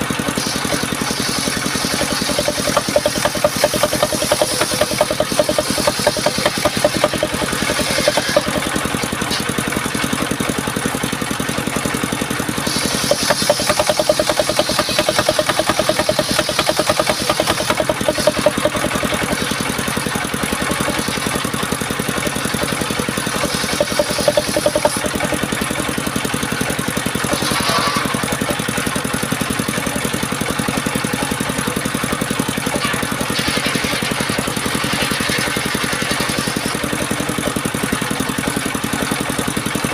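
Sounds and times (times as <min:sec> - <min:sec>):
saw blade hissing through wood: 0:00.0 - 0:08.8, 0:12.6 - 0:19.8, 0:23.3 - 0:25.6
engine-driven sawmill running: 0:00.0 - 0:39.9.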